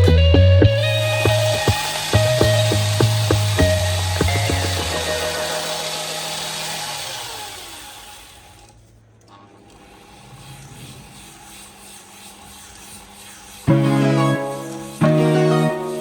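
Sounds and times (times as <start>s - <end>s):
background music: 0.0s - 6.1s, 13.7s - 16.0s.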